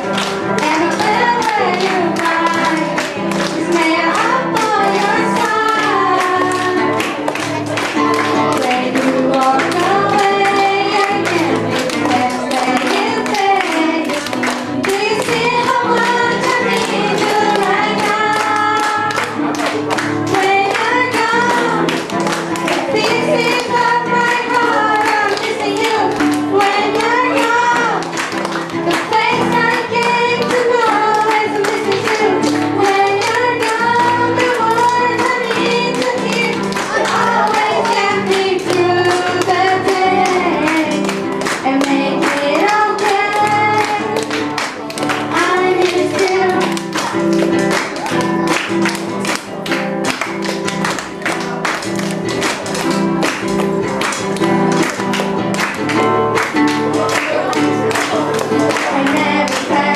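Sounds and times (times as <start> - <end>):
singers performing pop ballad: 32.8 - 40.9, 41.6 - 44.0.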